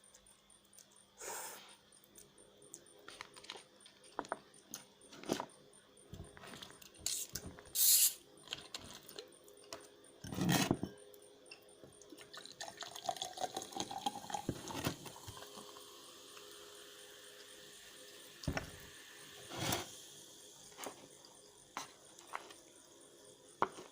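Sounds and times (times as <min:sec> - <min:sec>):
short hiss: 0:07.0 - 0:08.2, 0:19.4 - 0:20.0.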